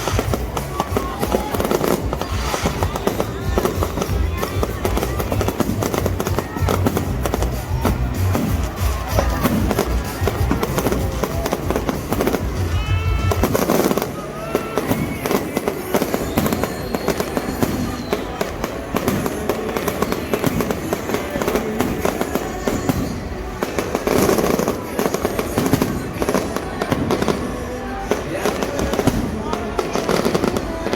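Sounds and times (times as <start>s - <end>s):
music with heavy bass: 0.0s - 13.6s
fireworks bangs and crackles: 0.0s - 30.9s
voices: 0.0s - 30.9s.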